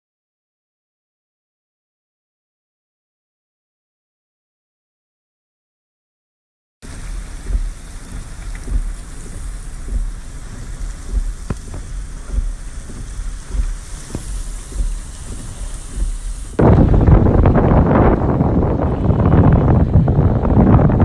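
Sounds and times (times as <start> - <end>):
raindrops ticking: 6.8 - 16.8
rain pouring: 6.8 - 21.0
wind buffeting microphone: 6.8 - 21.0.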